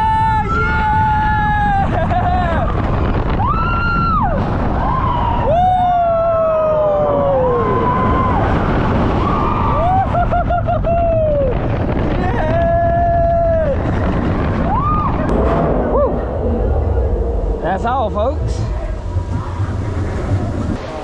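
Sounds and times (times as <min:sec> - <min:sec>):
riders screaming and whooping: 0:00.0 - 0:15.3
wind rush and ride rumble: 0:00.0 - 0:21.0.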